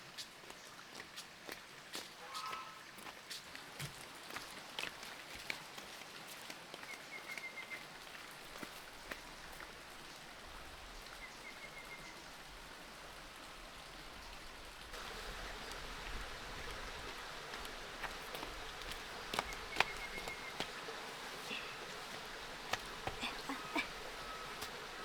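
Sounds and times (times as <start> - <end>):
outdoor ambience hiss: 0.0 - 25.0.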